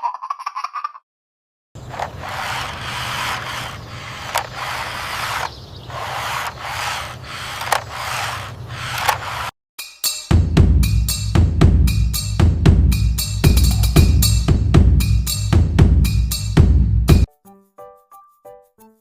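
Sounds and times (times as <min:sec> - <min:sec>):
sharp clicks: 0:01.8 - 0:09.5
toy car wheels rolling: 0:01.8 - 0:09.6.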